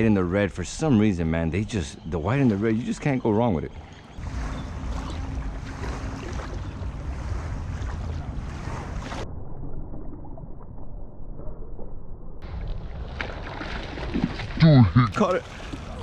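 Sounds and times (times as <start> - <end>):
small waves on shore: 2.3 - 9.2, 12.4 - 16.0
wind buffeting microphone: 3.7 - 9.2.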